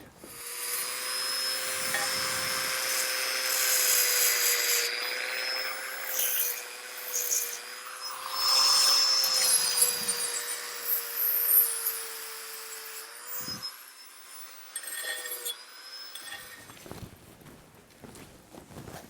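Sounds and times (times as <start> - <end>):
power tool motor whine: 0.0 - 16.9
grinding hiss on steel: 12.6 - 16.7.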